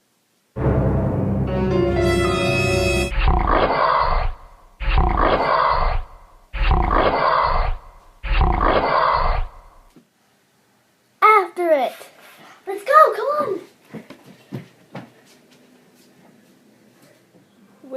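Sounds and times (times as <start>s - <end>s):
dramatic music sting: 0.6s - 4.5s
lion roaring: 3.1s - 9.7s.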